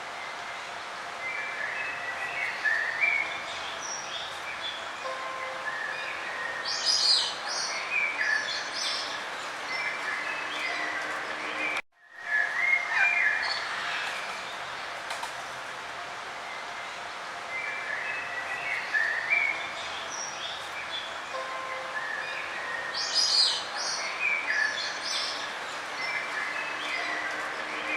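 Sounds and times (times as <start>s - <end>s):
songbirds singing and chirping: 0.1s - 15.1s, 16.1s - 27.9s.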